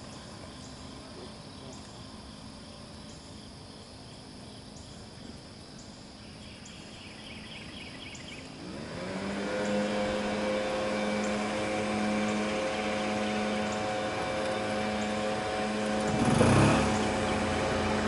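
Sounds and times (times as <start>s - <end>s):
faint insect chirping: 0.0s - 8.6s
small blower engine revving: 8.6s - 18.0s.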